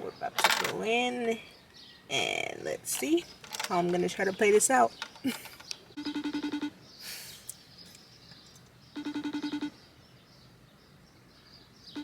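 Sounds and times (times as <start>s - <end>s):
trilling electronic phone ring: 6.0s - 6.8s, 9.0s - 9.8s.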